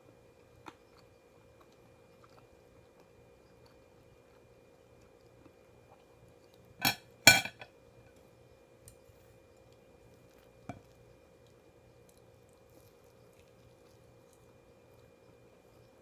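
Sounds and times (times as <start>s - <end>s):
tableware clattering: 6.8s - 7.6s.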